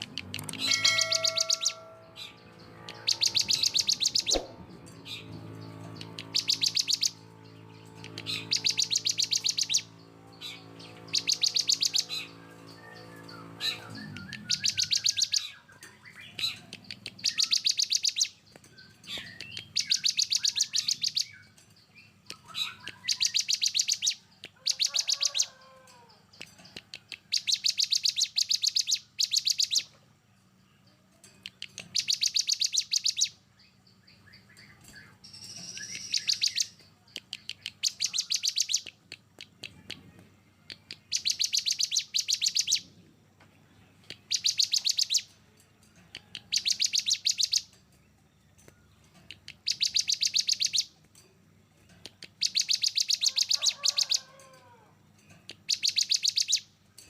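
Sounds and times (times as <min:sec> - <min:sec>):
songbird rapid sharp high notes: 0:00.0 - 0:21.5
softer lower bird calls: 0:00.6 - 0:05.3, 0:06.0 - 0:16.6.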